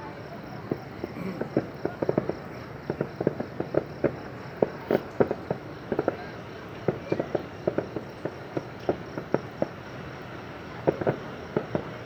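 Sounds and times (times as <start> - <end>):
fireworks crackling and popping: 0.0 - 12.0.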